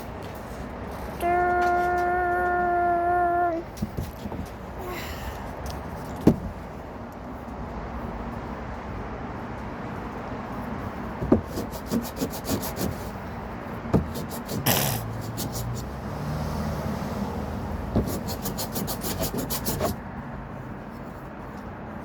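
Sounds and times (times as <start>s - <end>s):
sharp knocks: 11.2s - 13.0s, 13.9s - 15.5s
sandpaper rubbing on wood: 11.2s - 13.2s, 14.0s - 16.0s, 17.9s - 20.0s.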